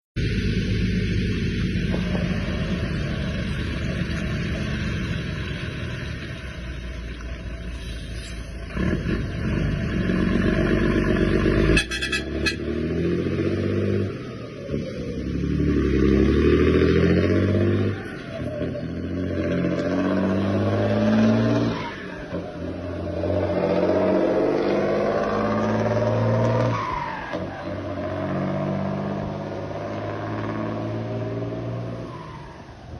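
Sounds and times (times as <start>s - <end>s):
car engine revving: 8.6s - 32.4s.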